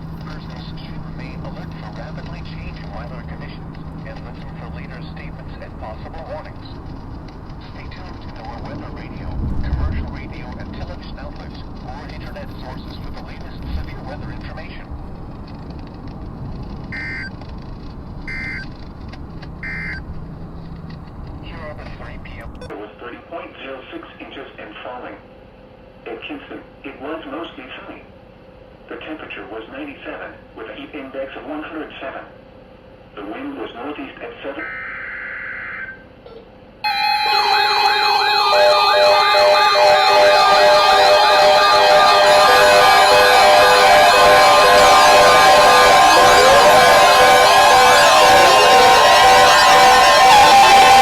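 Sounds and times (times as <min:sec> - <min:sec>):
radio hiss: 0:00.2 - 0:06.8, 0:07.6 - 0:14.9
electronic sirens and alarm tones: 0:16.9 - 0:17.4, 0:18.3 - 0:18.8, 0:19.6 - 0:20.1, 0:34.6 - 0:36.2, 0:36.8 - 0:51.0
pulsing beep: 0:17.0 - 0:17.3, 0:18.3 - 0:18.7, 0:19.6 - 0:20.0.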